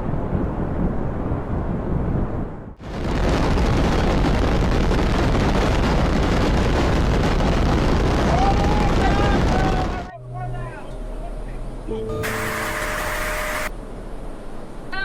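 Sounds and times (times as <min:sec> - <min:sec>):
high drawn-out tone: 0:12.1 - 0:13.7
hail battering: 0:12.2 - 0:13.7.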